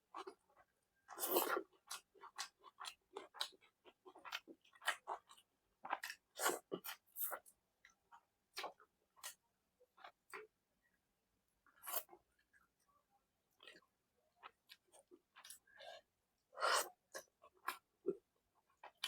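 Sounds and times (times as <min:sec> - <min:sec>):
person chewing soft food: 0:00.1 - 0:09.4, 0:13.6 - 0:19.0.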